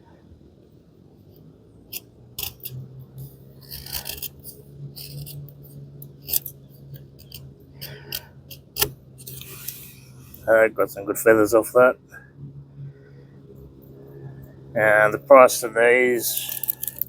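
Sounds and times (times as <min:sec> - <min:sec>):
knife scraping wood: 0:01.9 - 0:02.8, 0:03.6 - 0:10.5.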